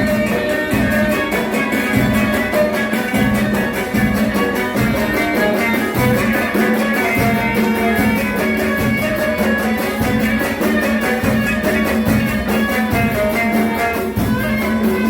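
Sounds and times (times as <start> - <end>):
fast hand-drum rhythm: 0.0 - 15.0
violin and strings melody: 0.0 - 15.0.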